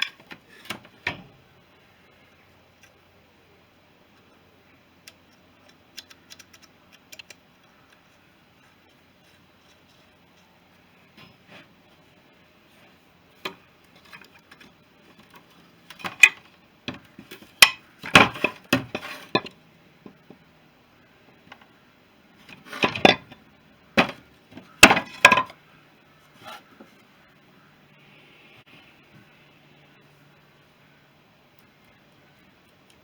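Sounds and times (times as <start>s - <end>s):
metal parts and tools clinking: 22.5s - 23.4s, 24.0s - 25.6s.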